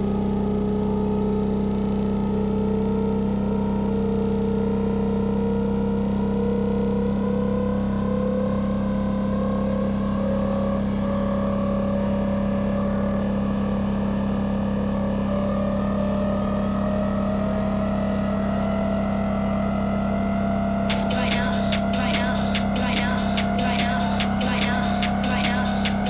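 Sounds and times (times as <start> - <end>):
low synth drone: 15.0 - 26.0.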